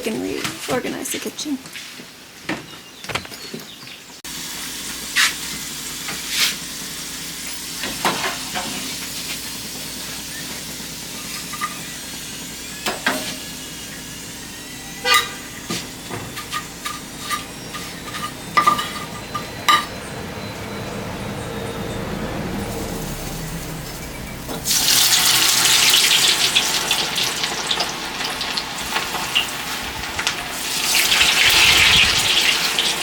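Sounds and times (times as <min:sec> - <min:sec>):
dishes clattering: 0:15.0 - 0:20.0.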